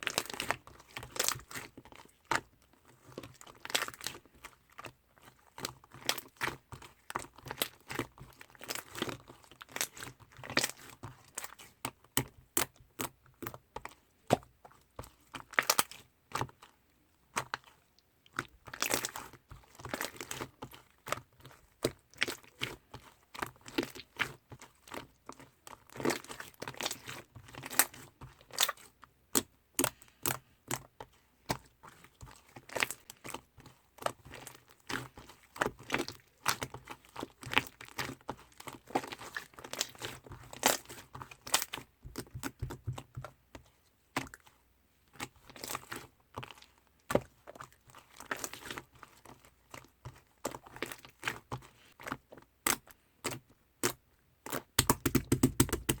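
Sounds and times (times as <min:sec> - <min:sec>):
slime crackling and popping: 0:54.6 - 0:56.0.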